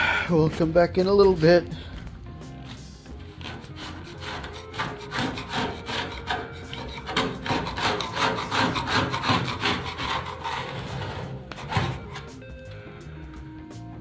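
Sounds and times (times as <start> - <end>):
hand tool rubbing sheet metal: 2.6 - 12.4.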